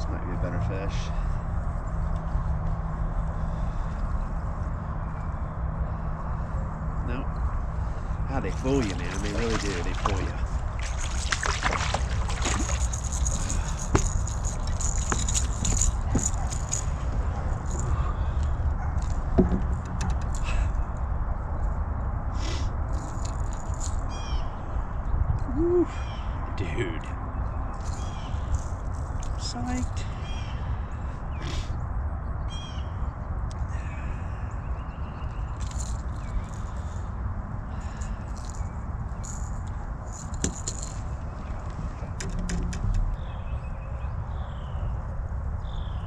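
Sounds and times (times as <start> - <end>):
steady low rumble: 0.0 - 32.4
fishing lure rattling and jangling: 8.4 - 20.7, 22.9 - 24.1, 27.7 - 30.0, 35.4 - 43.0
high bird calls: 29.7 - 31.7.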